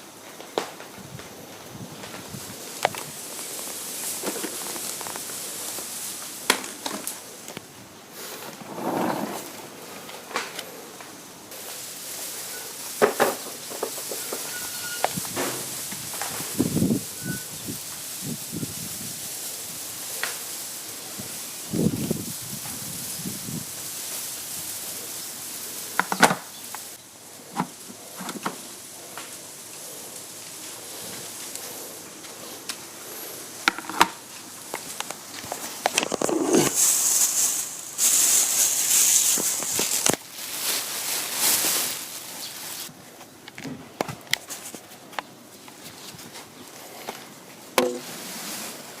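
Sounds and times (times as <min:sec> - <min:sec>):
steady hiss: 0:00.0 - 0:49.0
rustle or scrape: 0:00.8 - 0:43.3, 0:44.3 - 0:49.0
vacuum parts knocking and clattering: 0:04.1 - 0:05.3, 0:27.5 - 0:28.7, 0:47.8 - 0:48.1
objects knocking and clicking: 0:33.6 - 0:34.2.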